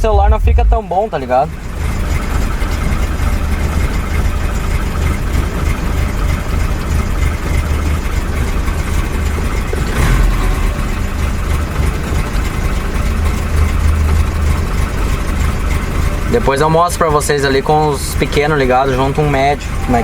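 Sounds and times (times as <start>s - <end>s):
bass-heavy music from car speakers: 0.0s - 1.2s.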